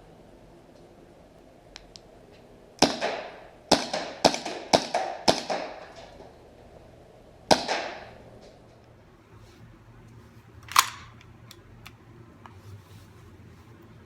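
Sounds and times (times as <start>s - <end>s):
airsoft pistol shots: 2.8s - 6.0s, 7.5s - 8.2s, 10.7s - 11.1s.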